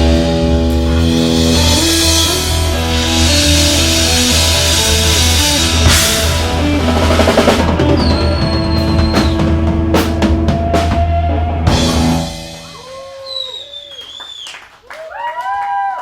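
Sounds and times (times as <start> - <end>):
drum kit hits: 0.0 - 12.8
live rock band: 0.0 - 13.6
people whooping: 7.9 - 9.5, 12.6 - 16.0
person whistling: 7.9 - 9.6, 12.8 - 14.6.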